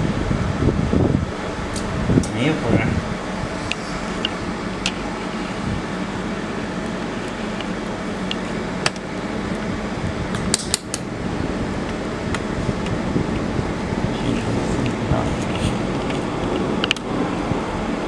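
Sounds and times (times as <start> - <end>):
cooling fan whirring: 0.0 - 18.0.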